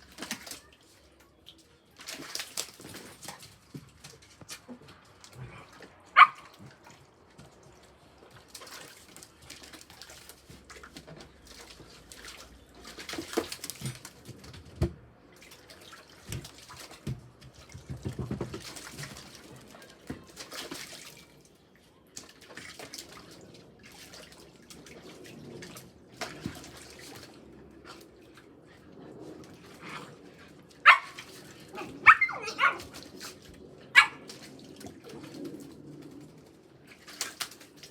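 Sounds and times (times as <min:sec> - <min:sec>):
puppies splashing in water: 0:00.0 - 0:37.9
puppy barking: 0:06.1 - 0:06.5, 0:30.8 - 0:32.9, 0:33.9 - 0:34.2.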